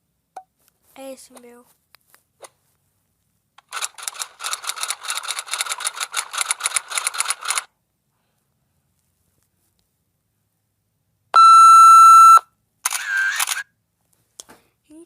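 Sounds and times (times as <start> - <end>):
rapid mechanical clicks: 3.6 - 7.7.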